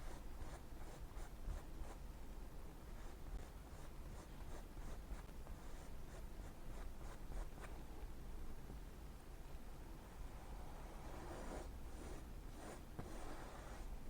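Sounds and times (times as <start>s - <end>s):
brush strokes on canvas: 0.0s - 2.0s, 2.9s - 7.7s, 10.2s - 14.0s.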